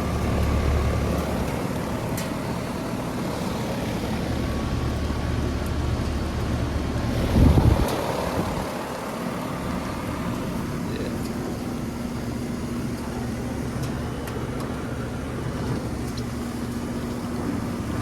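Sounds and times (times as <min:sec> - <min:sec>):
fan whoosh: 0:00.0 - 0:11.8.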